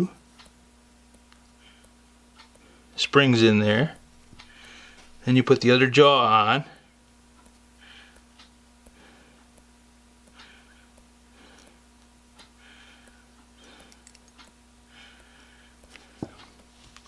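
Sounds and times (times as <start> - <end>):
soft breaths: 1.5 - 2.0, 4.4 - 5.2, 7.7 - 9.6, 10.3 - 14.2, 14.8 - 17.0
small metal parts clicking: 13.8 - 14.5.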